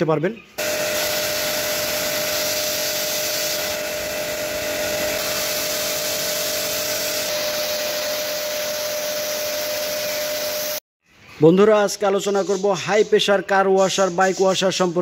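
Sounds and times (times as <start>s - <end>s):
pressure washer motor: 0.6s - 10.8s
water jet hissing: 0.6s - 10.8s.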